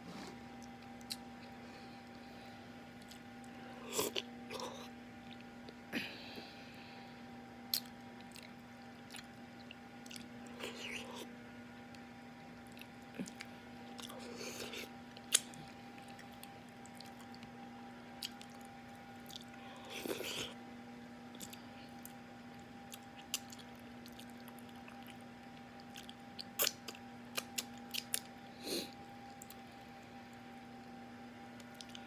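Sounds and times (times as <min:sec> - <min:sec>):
chewing and mouth smacking: 0:00.6 - 0:02.2, 0:07.7 - 0:11.3, 0:12.6 - 0:17.5, 0:18.2 - 0:20.6, 0:21.3 - 0:28.3, 0:31.6 - 0:32.0.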